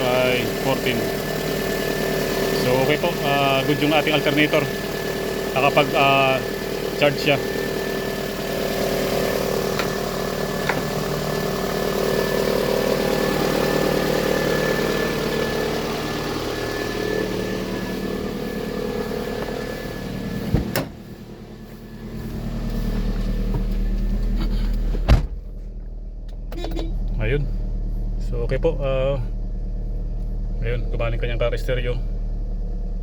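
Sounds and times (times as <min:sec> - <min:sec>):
car engine idling: 0:00.0 - 0:33.0
low hum: 0:00.0 - 0:33.0.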